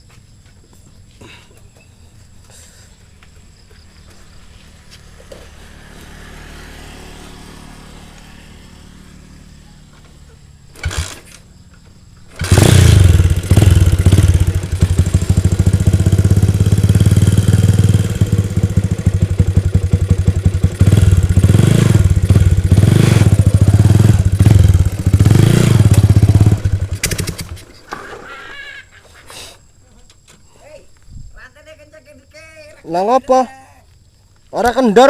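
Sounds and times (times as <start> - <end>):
motorcycle engine revving: 4.4 - 27.8.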